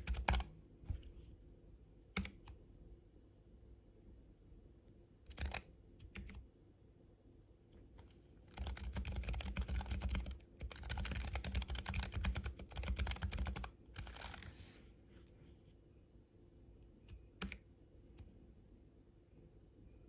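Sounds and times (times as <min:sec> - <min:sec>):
keyboard typing: 0:00.0 - 0:01.1, 0:02.2 - 0:02.6, 0:05.3 - 0:06.4, 0:08.0 - 0:14.6, 0:17.0 - 0:18.3.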